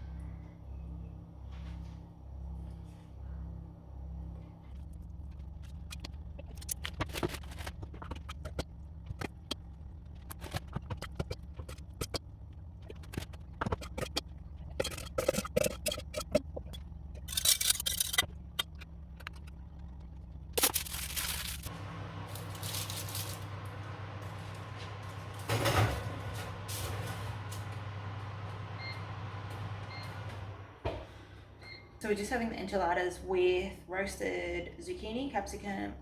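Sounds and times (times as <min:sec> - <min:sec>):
low steady hum: 0:00.0 - 0:36.0
utensils and containers clicking: 0:12.9 - 0:19.6.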